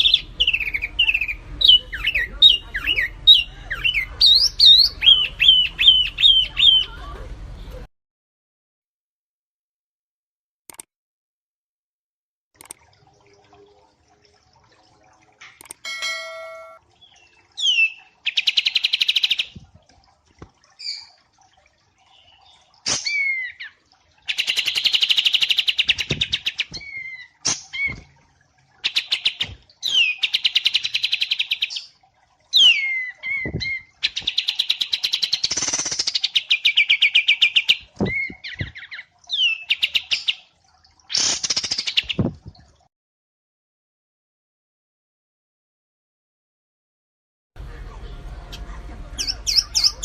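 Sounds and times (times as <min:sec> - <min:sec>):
songbirds whistling and trilling: 0:00.0 - 0:06.9, 0:16.0 - 0:19.4, 0:28.9 - 0:35.4, 0:36.4 - 0:40.4, 0:49.2 - 0:50.0.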